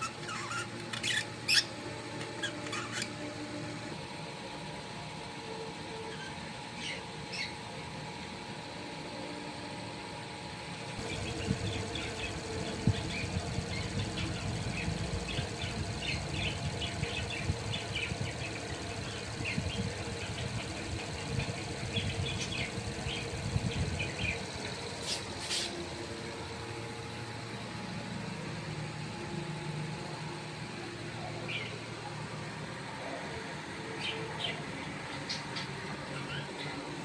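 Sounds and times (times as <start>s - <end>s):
budgies chirping: 2.4s - 3.1s.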